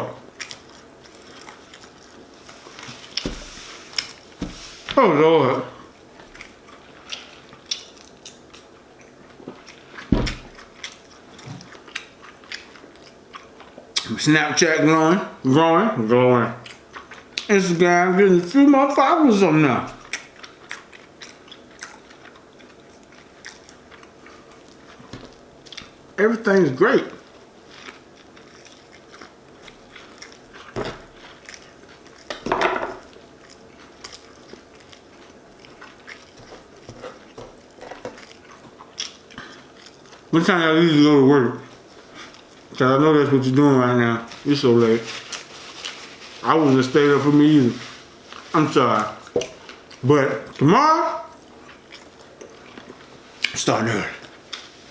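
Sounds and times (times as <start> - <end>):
wet chewing and lip smacks: 6.3 - 14.1
low thump: 10.1 - 10.5.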